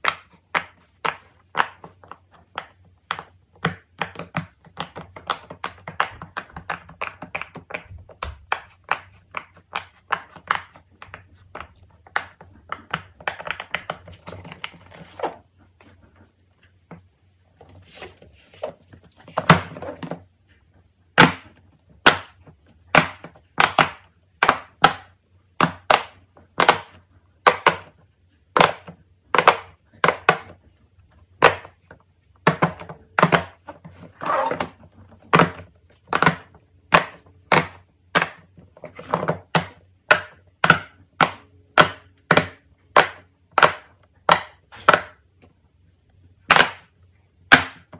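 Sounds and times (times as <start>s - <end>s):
fidget toys clicking and popping: 22.0s - 27.9s, 28.5s - 30.6s.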